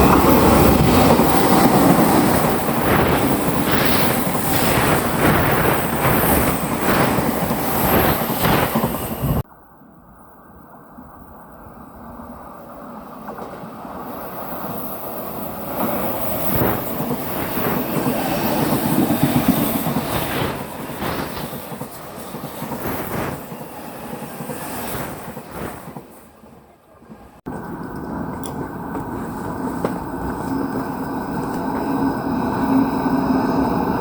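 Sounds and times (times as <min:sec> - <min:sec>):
wind buffeting microphone: 0:00.0 - 0:09.4, 0:15.3 - 0:26.4
electric train passing: 0:00.0 - 0:34.0.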